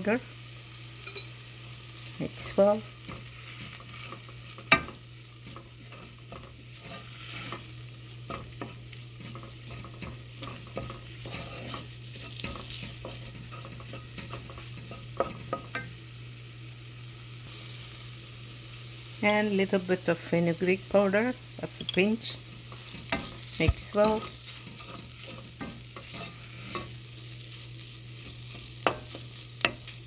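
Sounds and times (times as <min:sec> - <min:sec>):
food sizzling in oil: 0:00.0 - 0:30.0
spoon scraping a pan: 0:01.0 - 0:16.0, 0:21.0 - 0:30.0
spoon knocking on pan: 0:04.6 - 0:06.6.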